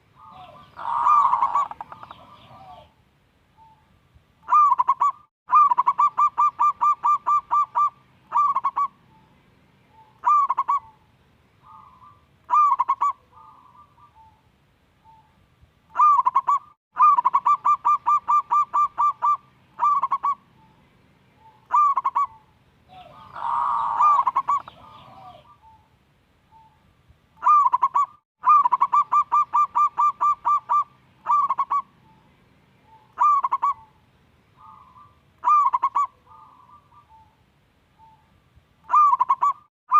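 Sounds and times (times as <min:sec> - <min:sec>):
rough noisy bird call: 0:00.1 - 0:03.0, 0:09.9 - 0:14.4, 0:21.4 - 0:25.9, 0:27.4 - 0:37.4
zebra dove cooing: 0:00.2 - 0:03.0, 0:04.4 - 0:09.3, 0:09.9 - 0:15.3, 0:15.9 - 0:20.8, 0:21.4 - 0:25.9, 0:27.4 - 0:34.0, 0:34.6 - 0:37.4, 0:38.9 - 0:39.9.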